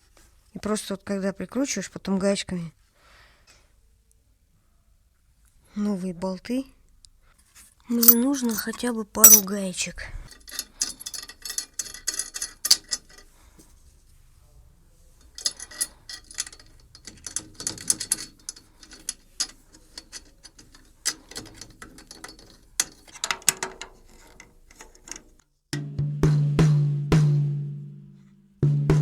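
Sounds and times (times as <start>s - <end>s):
metallic clinks of small hardware: 8.0s - 9.4s, 10.3s - 13.3s, 15.2s - 23.6s.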